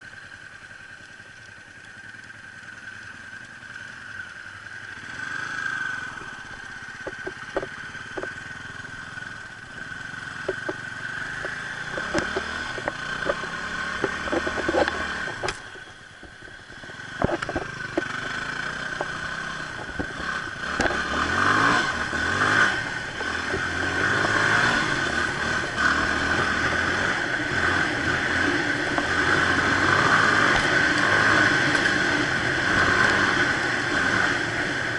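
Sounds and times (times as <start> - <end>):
motorcycle engine revving: 0.0 - 34.9
clicks and clatter: 6.2 - 8.4, 10.4 - 21.3.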